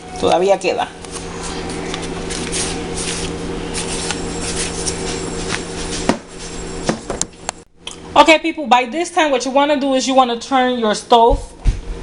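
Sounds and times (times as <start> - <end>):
low hum: 0.0 - 8.2
flour rustling and shuffling: 2.0 - 6.7.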